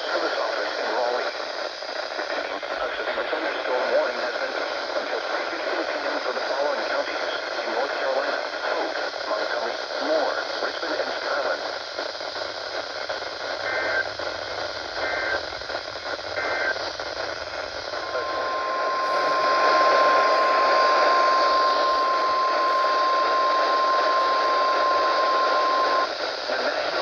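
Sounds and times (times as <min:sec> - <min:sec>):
radio hiss: 0:00.0 - 0:27.0
steady warning alarm tone: 0:18.0 - 0:26.1
two-tone digital data bursts: 0:18.0 - 0:26.1.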